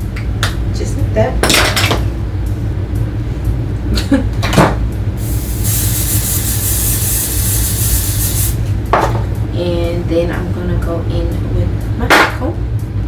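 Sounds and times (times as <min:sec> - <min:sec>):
aerosol can hissing: 0:05.2 - 0:08.7.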